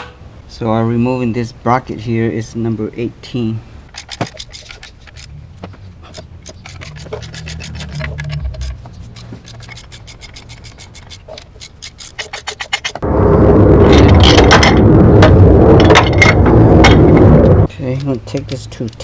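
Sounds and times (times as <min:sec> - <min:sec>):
metal scraping on metal: 0:06.0 - 0:13.0
ratchet wrench clicking: 0:06.1 - 0:13.0.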